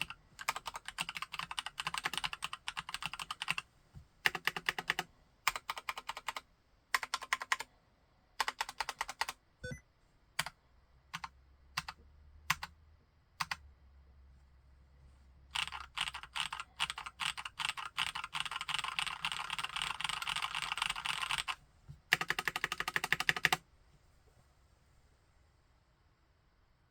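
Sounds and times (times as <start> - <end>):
typing on mechanical keyboard: 0.0 - 3.6, 4.2 - 7.7, 8.4 - 9.4, 11.2 - 12.7, 13.4 - 13.6, 15.5 - 23.6.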